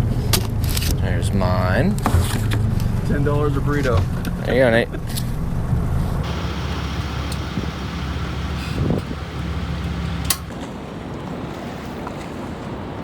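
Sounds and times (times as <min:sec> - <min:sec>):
boat engine humming: 0:00.0 - 0:13.0
engine stopping click: 0:06.2 - 0:10.8
wind and water hiss: 0:06.2 - 0:13.0.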